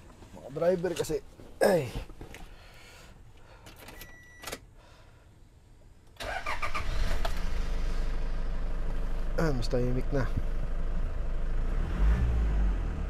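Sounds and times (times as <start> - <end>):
van engine starting and idling: 6.1 - 13.0.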